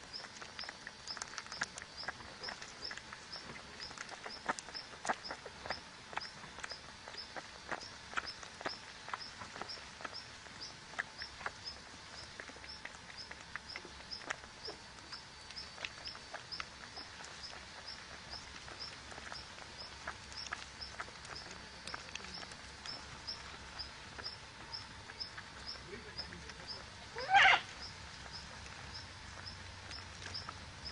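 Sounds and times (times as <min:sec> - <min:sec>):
animal's short high call: 0:27.2 - 0:27.7.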